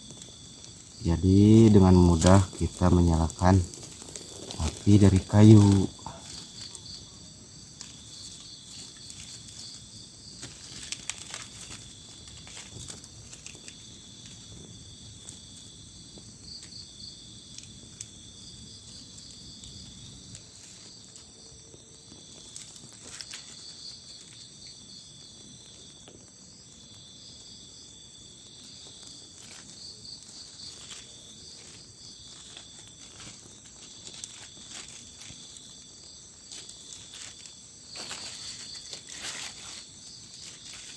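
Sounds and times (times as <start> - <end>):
low rustle: 0.0 - 15.6
crickets and insects trilling: 0.0 - 40.9.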